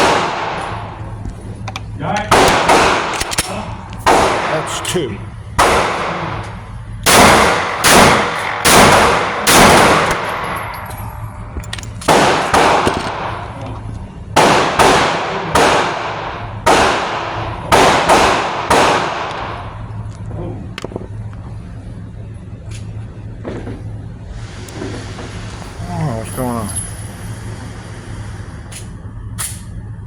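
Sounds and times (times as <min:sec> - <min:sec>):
pistol shots with ringing echo: 0:00.0 - 0:01.0, 0:02.2 - 0:05.0, 0:05.6 - 0:13.6, 0:14.3 - 0:19.8.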